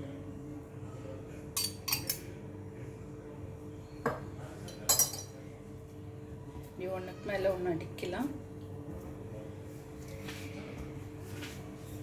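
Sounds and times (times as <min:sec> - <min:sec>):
kitchen utensils clinking: 0:01.6 - 0:02.2, 0:04.7 - 0:05.4.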